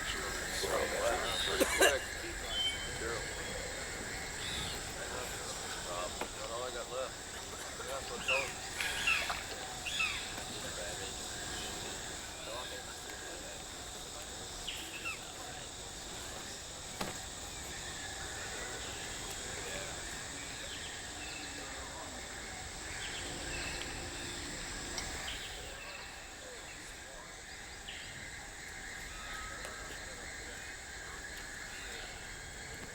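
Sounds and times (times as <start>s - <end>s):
insect drone: 0.0s - 32.9s.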